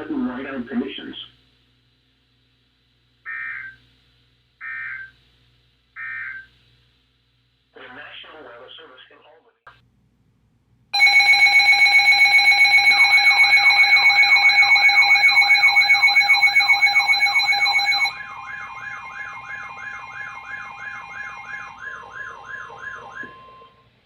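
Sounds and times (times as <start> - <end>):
warbling siren-like alert tone: 11.0 - 23.8
steady multi-tone alarm: 11.0 - 23.9.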